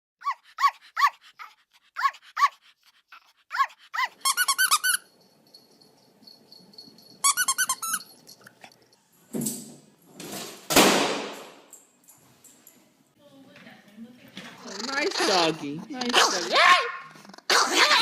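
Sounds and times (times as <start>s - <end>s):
dog yipping: 0.2s - 2.6s, 3.5s - 5.1s, 14.9s - 18.0s.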